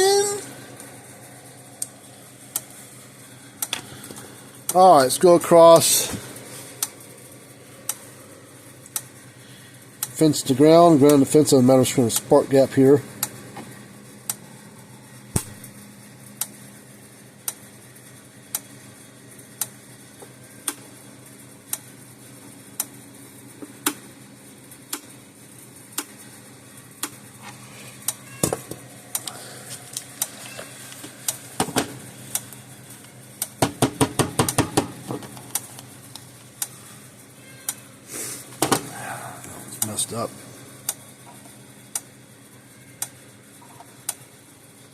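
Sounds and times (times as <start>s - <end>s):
electric fence spark snapping: 15.3s - 15.7s.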